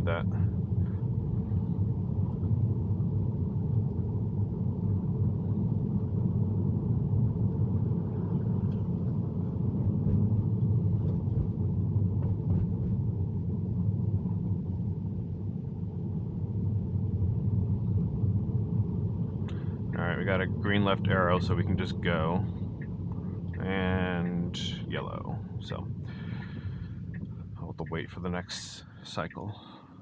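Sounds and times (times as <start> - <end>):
car cabin rumble: 6.6 - 29.5.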